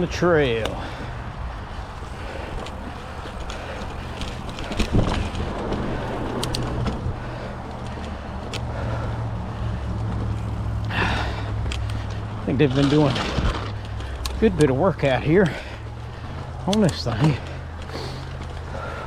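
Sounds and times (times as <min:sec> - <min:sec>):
bike clicks and rattles: 0:00.0 - 0:19.0
bike tyres rumbling on dirt: 0:00.0 - 0:19.0
wind on microphone: 0:01.1 - 0:07.6.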